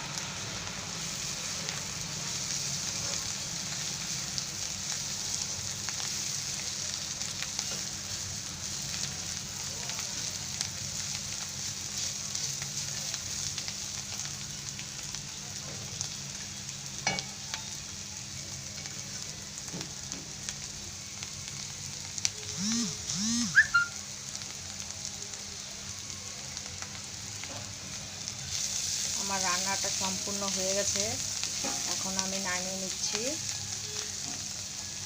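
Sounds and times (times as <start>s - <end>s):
food sizzling in a pan: 0.0s - 35.0s.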